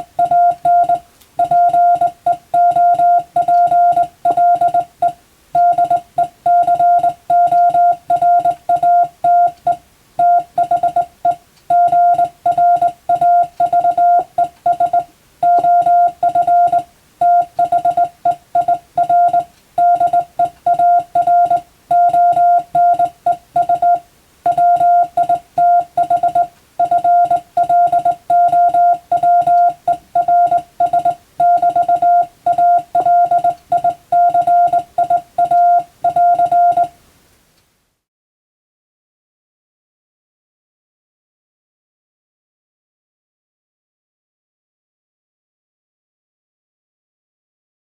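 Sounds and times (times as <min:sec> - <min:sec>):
morse code beeps: 0:00.0 - 0:37.0.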